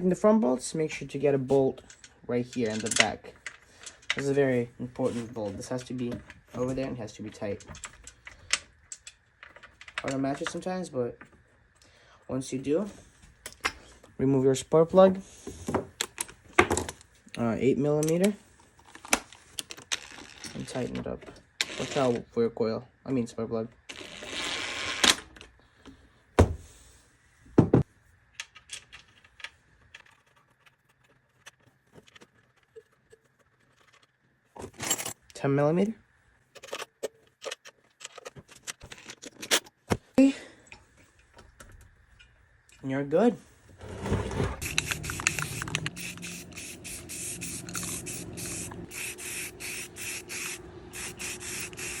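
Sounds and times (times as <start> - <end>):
short bursts of hissing spray: 44.6 - 52.0.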